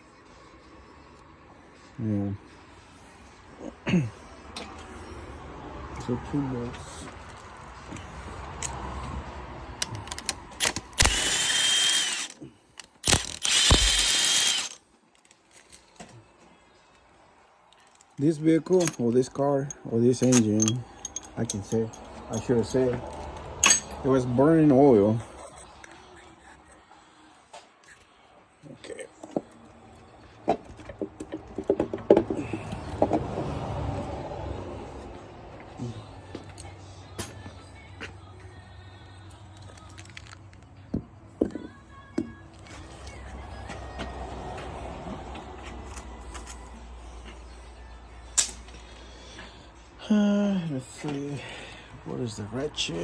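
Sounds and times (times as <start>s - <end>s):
power ratchet whining: 9.8s - 14.8s
metal tools clinking and knocking: 17.8s - 24.2s.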